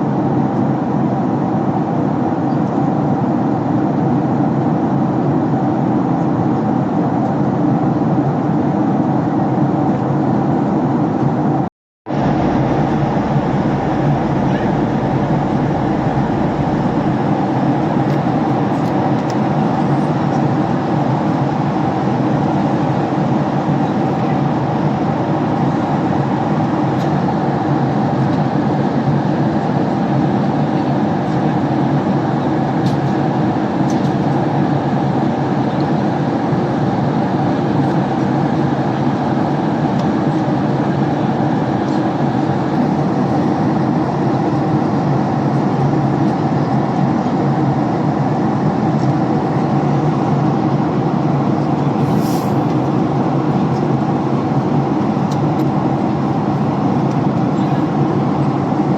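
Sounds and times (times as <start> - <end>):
airliner cabin engine drone: 0.0 - 58.9.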